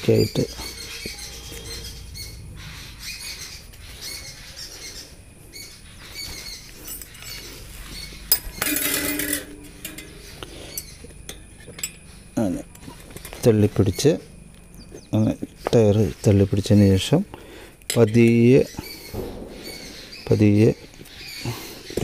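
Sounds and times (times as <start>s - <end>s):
metal rim and spokes clinking: 8.3s - 13.6s.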